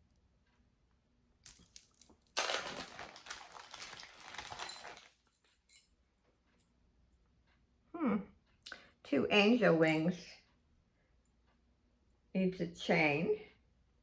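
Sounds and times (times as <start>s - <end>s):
jewelry clicking and clinking: 1.4s - 6.0s.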